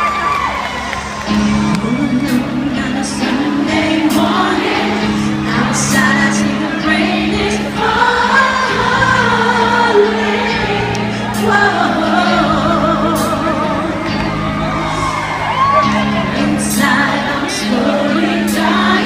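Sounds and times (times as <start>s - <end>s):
person singing with vibrato: 1.6s - 15.2s, 15.8s - 19.0s.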